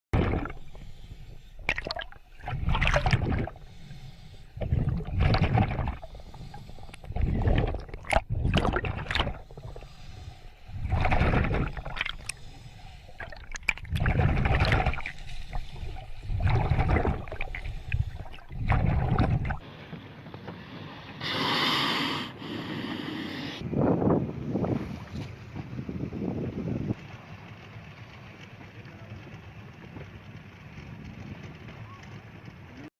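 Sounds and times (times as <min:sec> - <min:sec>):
low rumble: 0:00.2 - 0:19.7
sea water splashing around boat: 0:00.2 - 0:19.7.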